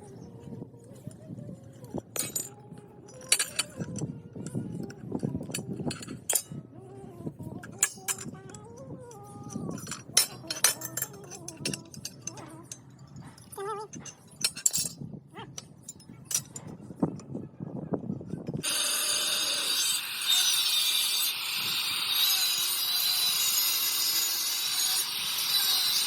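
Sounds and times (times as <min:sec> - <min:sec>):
metal clinking and knocking: 0:02.2 - 0:04.0, 0:09.5 - 0:15.0, 0:15.6 - 0:16.7.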